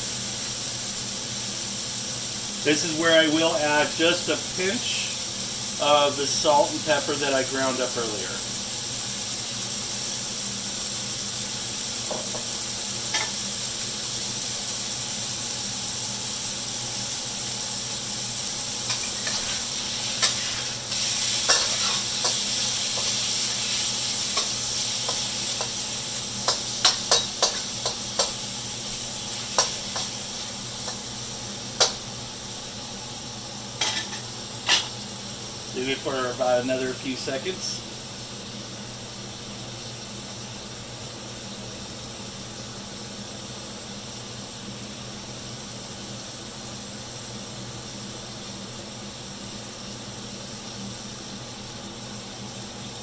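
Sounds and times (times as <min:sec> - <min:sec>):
chicken sizzling in hot oil: 0:00.0 - 0:53.0
spatula scraping a wok: 0:13.1 - 0:13.4, 0:18.8 - 0:31.1, 0:33.8 - 0:35.0.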